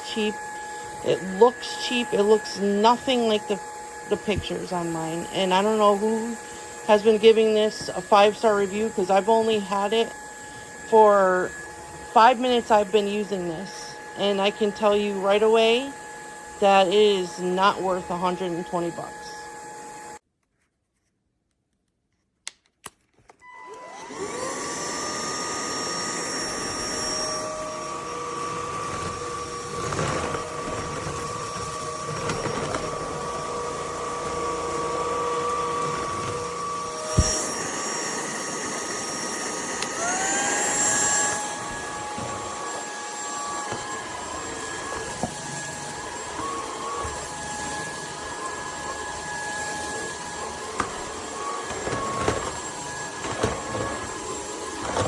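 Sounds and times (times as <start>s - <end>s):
stick vacuum high whine: 0.0s - 20.2s, 23.4s - 55.0s.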